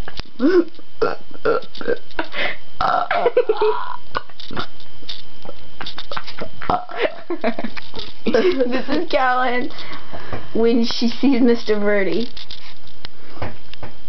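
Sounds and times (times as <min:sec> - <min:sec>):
woman burping loudly: 0:00.4 - 0:04.8, 0:06.1 - 0:07.3.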